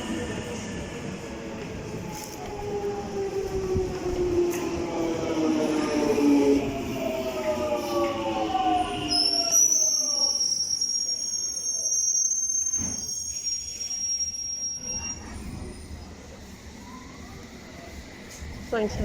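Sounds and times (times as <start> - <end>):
train whine: 0.0 - 13.2
high-pitched wheel squeal: 8.8 - 16.0.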